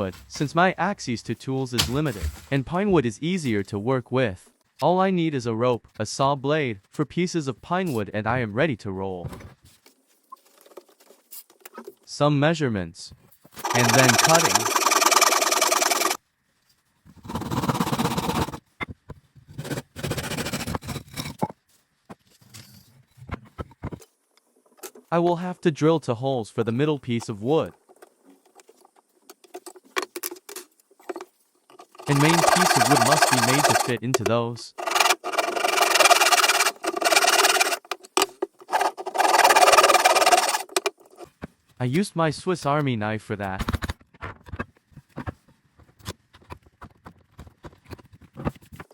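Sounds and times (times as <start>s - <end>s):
handsaw cutting wood: 13.6s - 16.2s, 17.2s - 18.6s, 19.6s - 21.1s, 31.8s - 34.0s, 34.8s - 41.3s
knife scraping wood: 13.6s - 16.2s, 17.2s - 18.6s, 19.6s - 21.5s, 29.4s - 41.3s.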